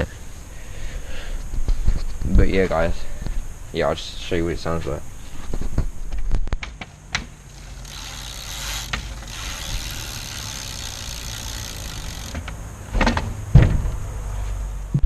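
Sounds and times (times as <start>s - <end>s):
bicycle freewheel ticking: 7.5s - 12.5s
thumps: 12.3s - 14.0s.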